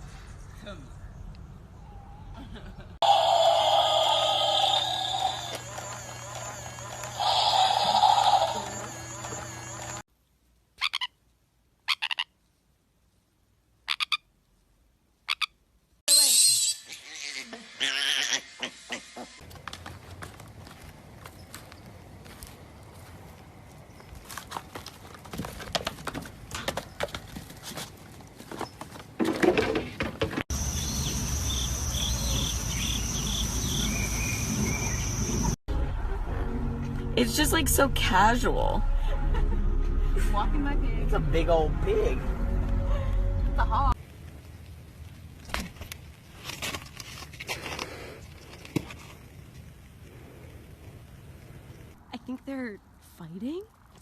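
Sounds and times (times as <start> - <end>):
frog croaking: 3.0 - 10.0, 13.9 - 14.3, 30.6 - 35.5
high insect trill: 3.0 - 10.0, 30.5 - 35.6.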